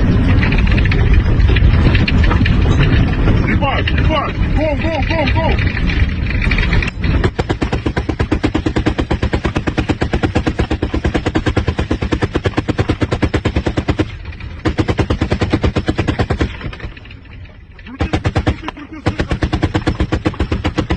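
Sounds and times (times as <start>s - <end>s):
machine gun firing bursts: 7.1s - 16.9s, 17.9s - 20.9s.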